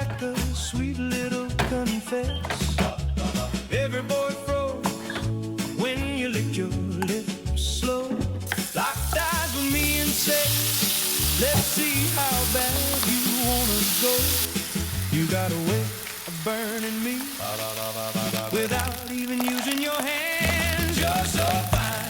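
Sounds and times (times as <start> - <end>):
music with steady bass beat: 0.0 - 16.1, 20.3 - 22.0
rice sizzling in a pan: 8.5 - 22.0.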